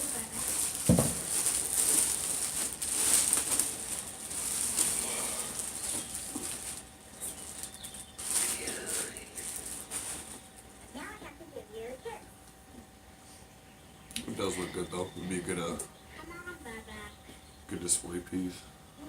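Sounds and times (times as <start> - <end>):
latex mask rustling: 0.0 - 12.2.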